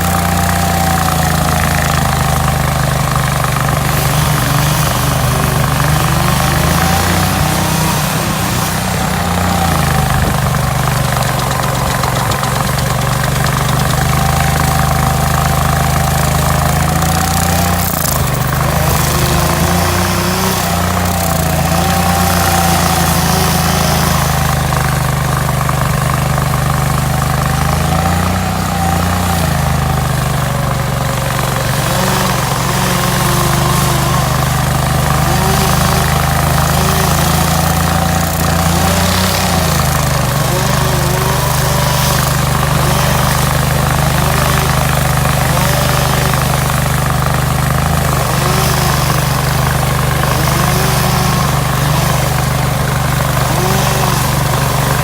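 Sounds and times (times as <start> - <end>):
stump grinder engine: 0.0 - 55.0.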